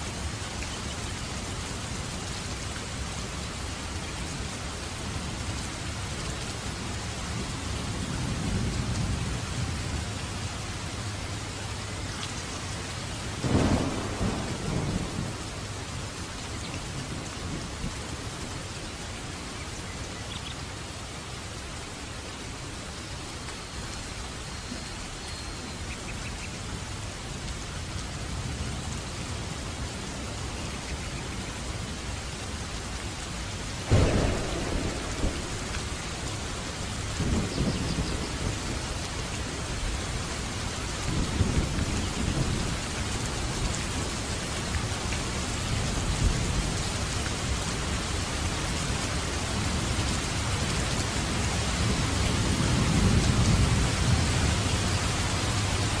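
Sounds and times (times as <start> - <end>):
steady rain: 0.0 - 56.0
rolling thunder rumbles: 13.2 - 18.5, 33.8 - 48.2, 51.1 - 56.0
thunder clap: 13.4 - 15.6, 33.9 - 38.9.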